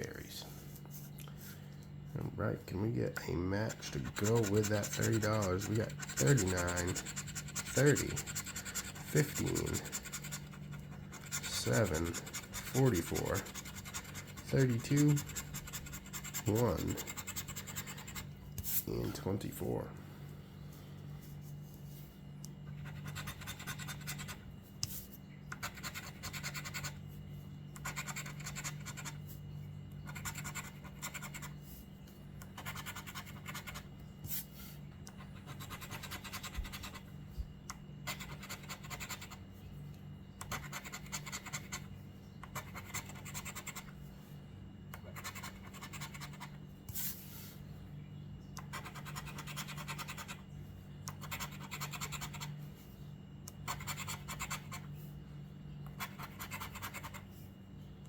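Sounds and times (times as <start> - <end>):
scratch card being scratched: 3.7 - 18.8, 22.7 - 27.0, 27.8 - 29.2, 30.1 - 31.6, 32.5 - 33.8, 35.1 - 37.0, 38.0 - 39.4, 40.4 - 41.8, 42.5 - 43.9, 45.0 - 47.1, 48.6 - 50.4, 51.1 - 52.5, 53.7 - 54.9, 56.0 - 57.2.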